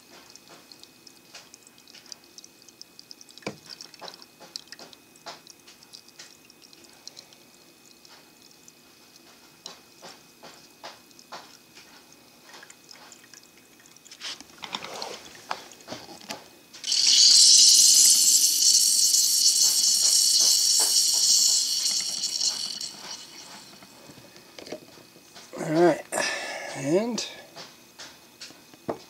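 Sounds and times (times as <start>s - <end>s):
coffee dripping: 0.0s - 25.7s
loud steady air hiss: 16.8s - 27.8s.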